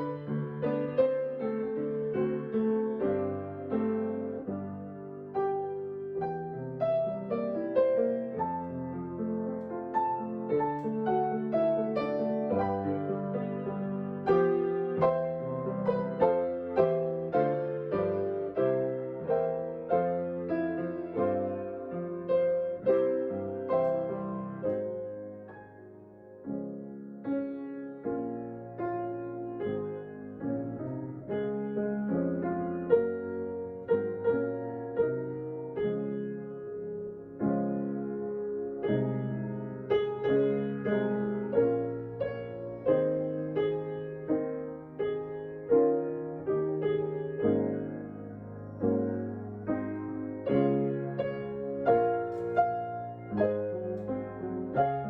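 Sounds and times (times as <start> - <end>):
slow solo piano: 0.0 - 55.0.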